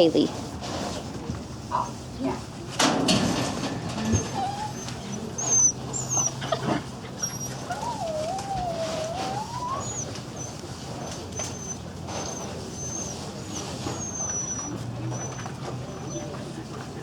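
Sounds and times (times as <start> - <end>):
small dog whining: 3.9 - 16.6.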